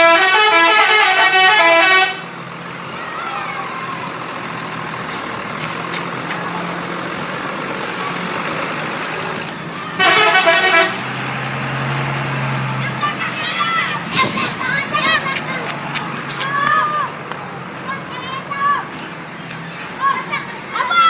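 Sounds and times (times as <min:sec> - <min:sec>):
bus musical horn tune: 0:00.0 - 0:02.3, 0:09.9 - 0:11.3
traffic and engine noise: 0:00.0 - 0:21.0.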